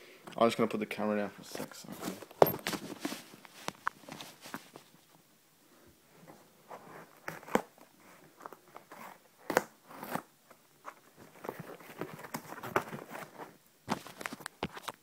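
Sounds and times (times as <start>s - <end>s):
packaging rustling and scraping: 1.5s - 5.0s, 6.3s - 15.0s.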